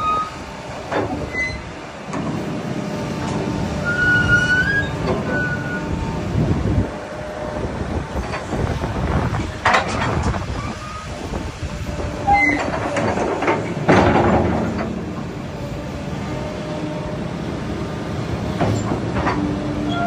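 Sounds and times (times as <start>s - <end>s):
heavy machinery rumbling: 0.0s - 20.0s
short squeaks: 1.2s - 1.7s, 3.8s - 5.9s, 12.3s - 12.9s.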